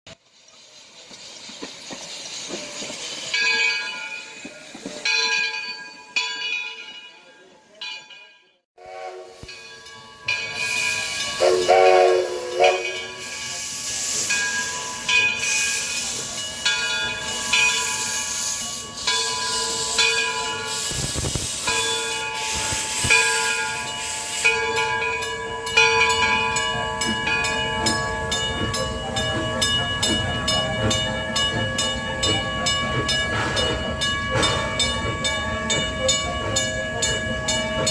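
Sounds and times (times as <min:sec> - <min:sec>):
loud hiss of steam: 0:00.1 - 0:05.1, 0:08.8 - 0:37.9
steam whistle blast: 0:08.8 - 0:09.7, 0:10.6 - 0:13.6
locomotive exhaust beats: 0:08.8 - 0:37.9.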